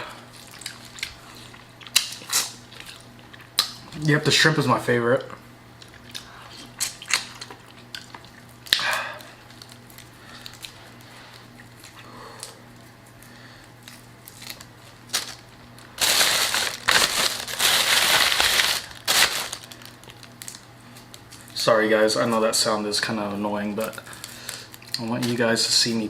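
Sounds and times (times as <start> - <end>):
shell crunching and crinkling: 13.7 - 21.6.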